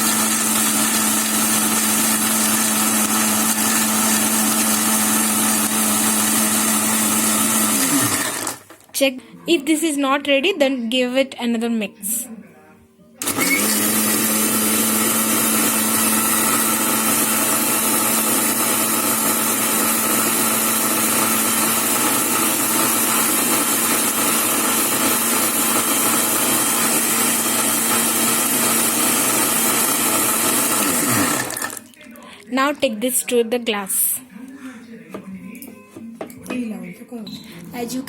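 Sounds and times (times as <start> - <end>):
mixer grinder motor running: 0.0 - 8.8, 13.2 - 31.9.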